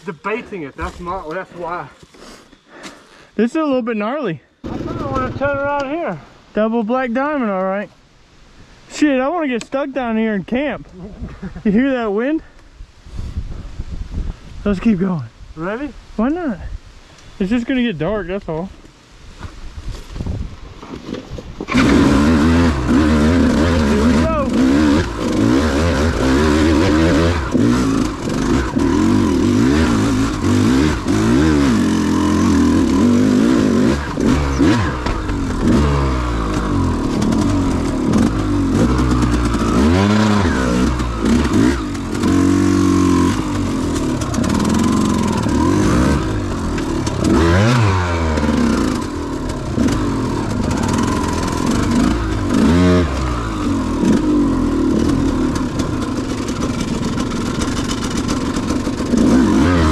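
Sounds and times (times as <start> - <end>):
dirt bike engine revving: 21.7 - 59.9.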